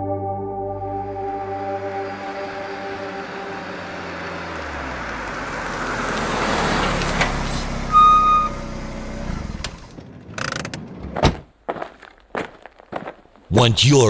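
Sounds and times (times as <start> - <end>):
car engine running: 1.4 - 10.3.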